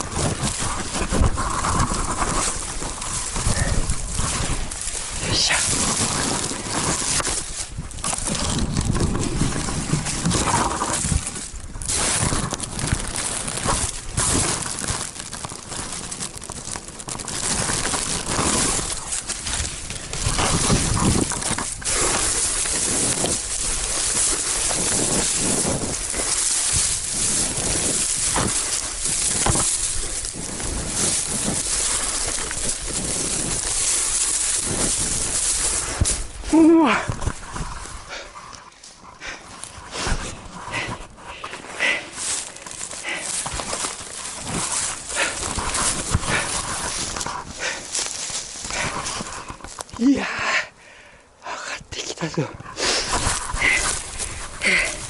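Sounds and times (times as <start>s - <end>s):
rustling: 0.0s - 50.3s, 52.0s - 55.0s
footsteps crunching on rocky trail: 0.0s - 50.8s, 51.8s - 55.0s.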